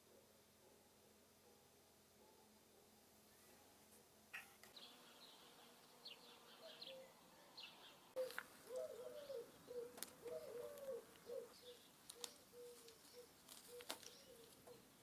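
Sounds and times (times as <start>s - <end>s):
small birds chirping high: 4.3s - 15.0s.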